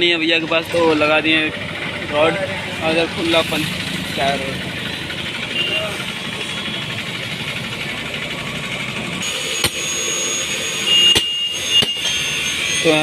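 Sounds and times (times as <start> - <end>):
engine-like hum: 0.0 - 13.0
thin high whine: 9.2 - 13.0
tool striking wheel: 9.2 - 13.0.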